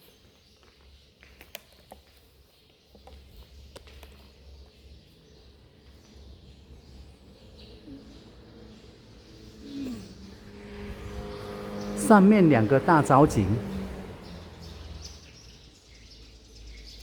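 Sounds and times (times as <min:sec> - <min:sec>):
low rumble: 0:10.0 - 0:12.0.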